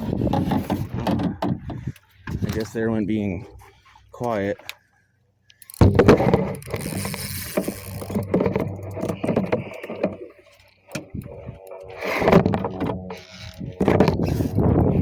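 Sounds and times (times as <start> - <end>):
knocks and clicks on a boat: 0.0 - 2.7, 5.8 - 15.0.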